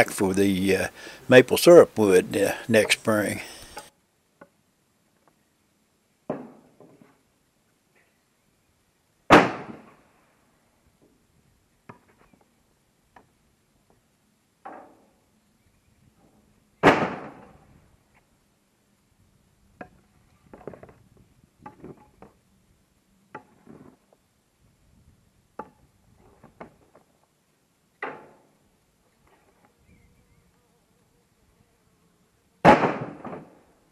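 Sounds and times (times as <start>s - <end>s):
loud wooden thunk: 32.7s - 33.5s.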